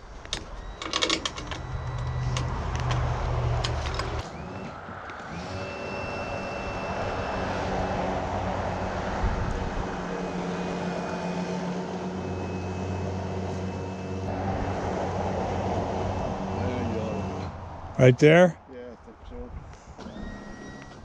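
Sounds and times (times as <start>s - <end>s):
engine running: 0.0s - 18.0s
thin high whine: 5.4s - 8.0s.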